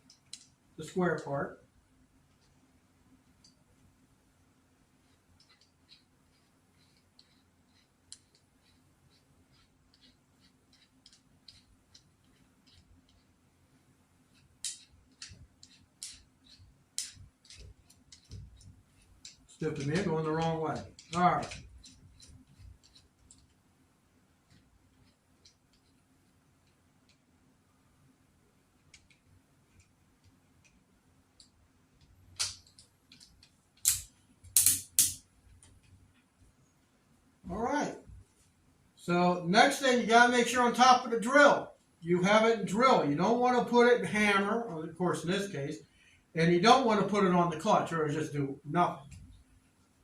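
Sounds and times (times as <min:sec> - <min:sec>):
light clicks and handling noise: 0:00.0 - 0:00.6, 0:14.3 - 0:23.7, 0:28.7 - 0:36.5.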